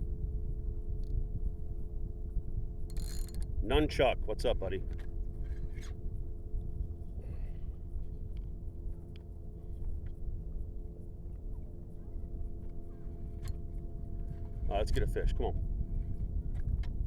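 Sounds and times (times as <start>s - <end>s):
faint steady drone: 0.0s - 17.0s
wind: 0.0s - 17.0s.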